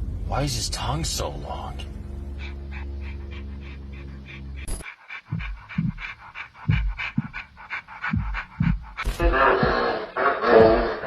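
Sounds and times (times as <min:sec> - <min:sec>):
heavy low pulses: 0:00.0 - 0:11.0
low steady drone: 0:00.0 - 0:11.0
dog panting: 0:02.2 - 0:11.0.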